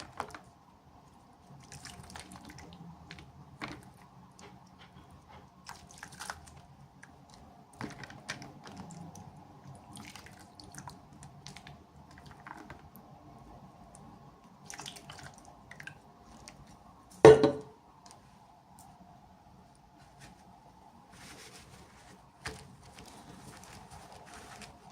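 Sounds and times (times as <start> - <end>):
plastic packaging rustling and clicking: 21.4 - 24.9.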